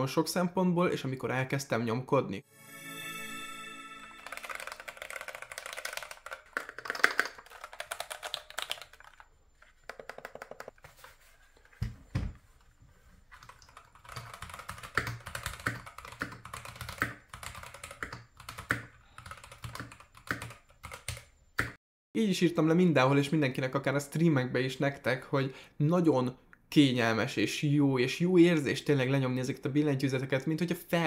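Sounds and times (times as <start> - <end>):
mechanical keyboard typing: 4.2 - 9.2, 9.8 - 10.8, 13.4 - 21.3.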